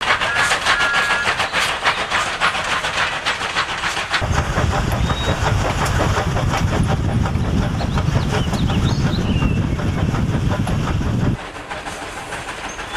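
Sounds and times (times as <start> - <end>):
steam hiss: 0.0 - 12.9
steam locomotive chuffing: 0.0 - 12.9
deep rumble: 4.2 - 11.4.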